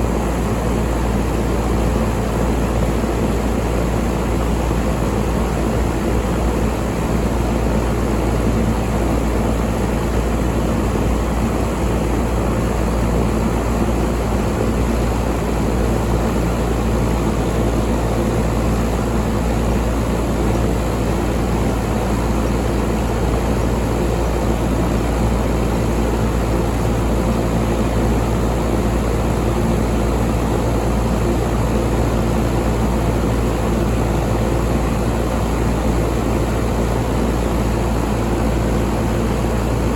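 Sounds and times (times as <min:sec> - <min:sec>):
air conditioner air rushing: 0:00.0 - 0:39.9.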